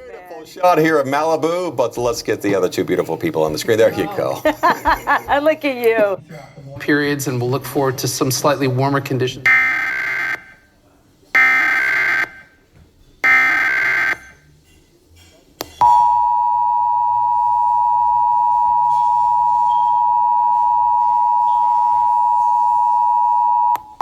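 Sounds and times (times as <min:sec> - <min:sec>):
two-tone attention signal: 0:15.8 - 0:23.8.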